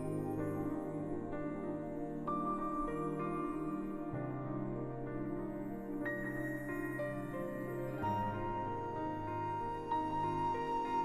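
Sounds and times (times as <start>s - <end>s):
soft ambient music: 0.0s - 11.0s.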